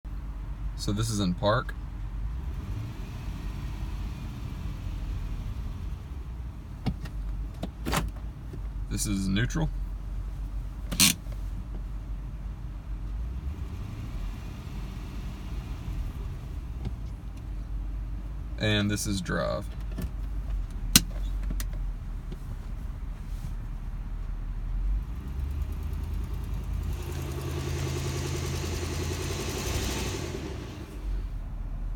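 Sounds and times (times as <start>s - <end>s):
car engine idling: 13.5s - 31.9s
engine ticking: 25.0s - 31.5s.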